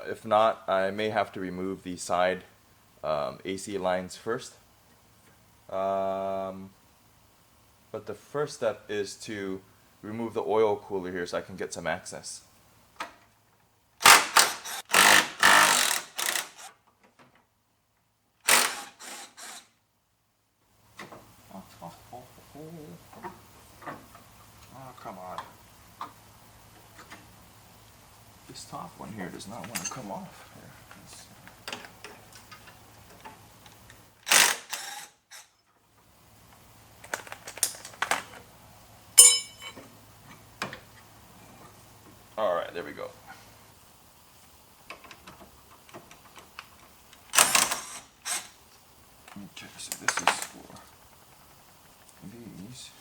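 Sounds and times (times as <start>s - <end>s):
ratchet wrench clicking: 14.0s - 16.7s, 34.3s - 35.5s
ringing metal clank: 39.2s - 39.8s.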